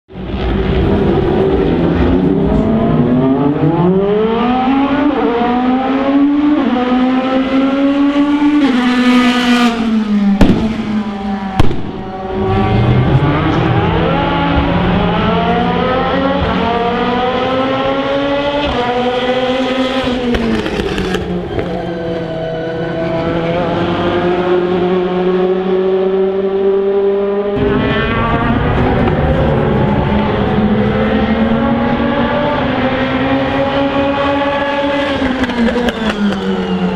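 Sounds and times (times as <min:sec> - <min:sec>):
race car engines accelerating: 0:00.1 - 0:36.9
loud backfire bangs: 0:10.4 - 0:12.2.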